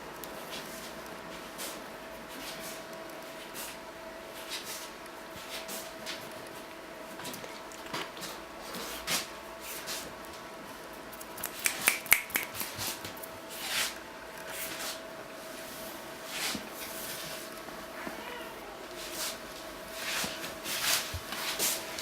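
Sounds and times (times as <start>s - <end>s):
kittens scrabbling and playing: 11.0s - 15.0s.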